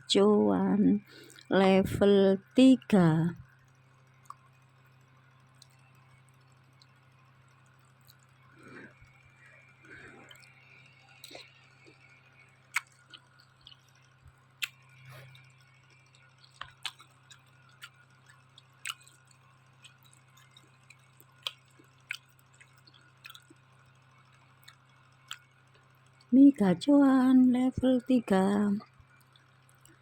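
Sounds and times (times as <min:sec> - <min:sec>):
faint low hum: 0:00.0 - 0:30.0
person chewing with smacks: 0:08.0 - 0:12.1, 0:12.7 - 0:15.5, 0:16.1 - 0:23.6, 0:24.6 - 0:25.8.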